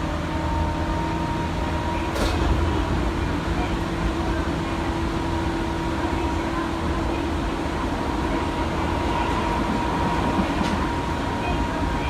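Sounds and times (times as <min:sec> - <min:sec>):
electric train rumble: 0:00.0 - 0:12.0.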